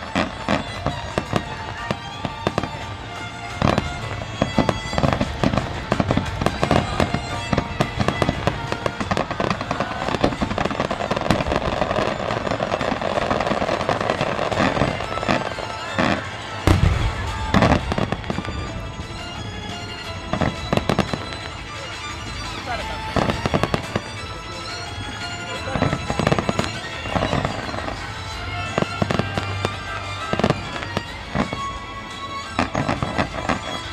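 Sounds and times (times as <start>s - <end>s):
fireworks crackling and popping: 0.0s - 33.9s
heavy firework shell bursts: 0.0s - 33.9s.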